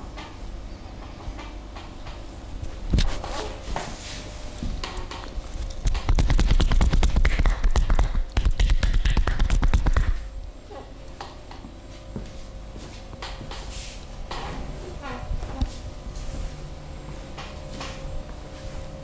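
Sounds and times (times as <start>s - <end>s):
rhythmic hand strikes on body: 5.8s - 10.3s.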